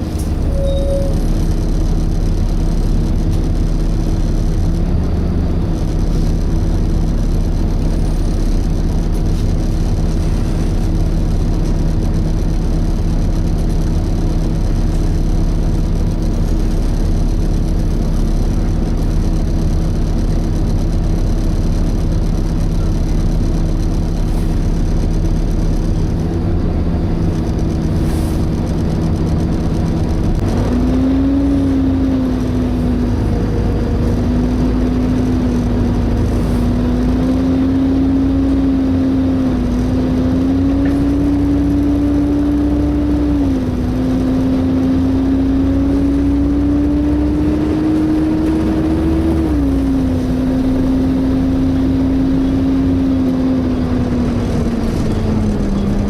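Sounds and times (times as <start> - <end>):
bus diesel engine rumbling: 0.0 - 56.0
engine cooling fan whirring: 0.0 - 56.0.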